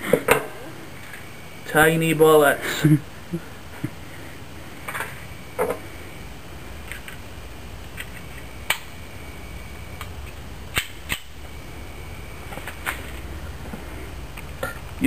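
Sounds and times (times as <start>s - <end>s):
sharp metallic pistol clicks: 10.7s - 11.3s.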